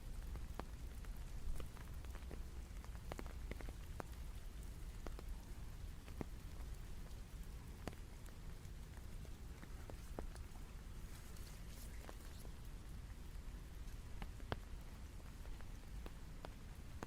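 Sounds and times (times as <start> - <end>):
rain falling: 0.0 - 17.0
drops ticking on a surface: 0.2 - 12.8.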